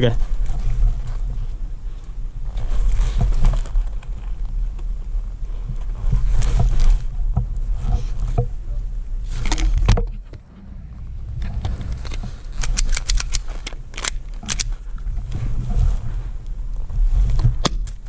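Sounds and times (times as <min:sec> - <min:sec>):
wind rumble on microphone: 0:00.0 - 0:18.0
airsoft gun cracks: 0:12.6 - 0:14.7.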